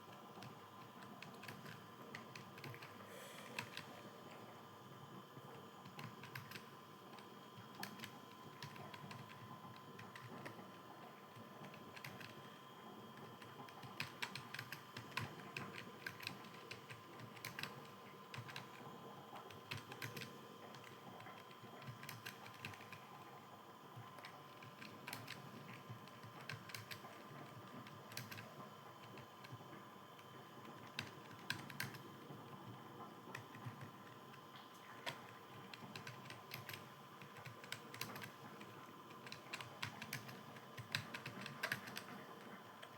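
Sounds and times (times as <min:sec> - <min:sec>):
faint electrical hum: 0:00.0 - 0:42.9
computer keyboard typing: 0:00.1 - 0:03.0, 0:03.6 - 0:03.9, 0:05.8 - 0:12.5, 0:13.1 - 0:23.4, 0:24.0 - 0:29.6, 0:30.2 - 0:42.9.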